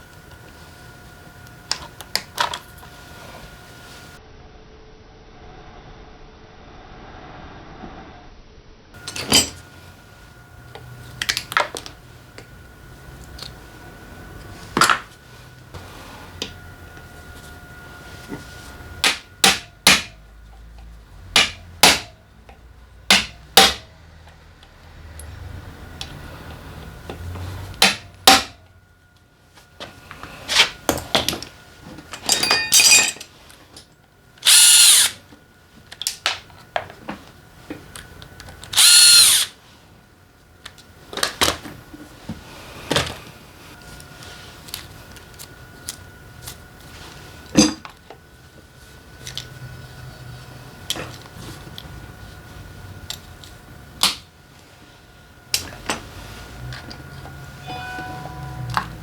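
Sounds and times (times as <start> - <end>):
metal tools clinking: 32.1 - 33.3
handheld power driver running: 34.4 - 35.2, 38.6 - 39.6.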